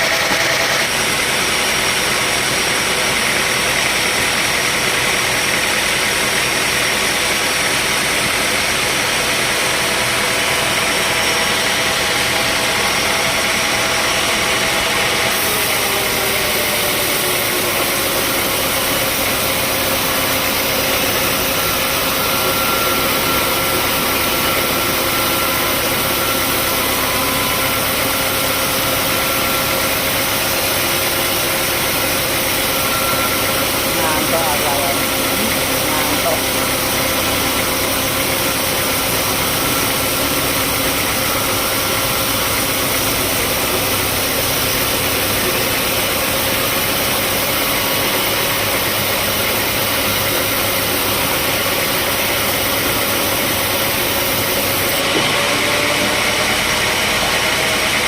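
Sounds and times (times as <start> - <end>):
sawmill machinery engine drone: 0.0 - 58.0
machinery hiss: 15.3 - 55.5.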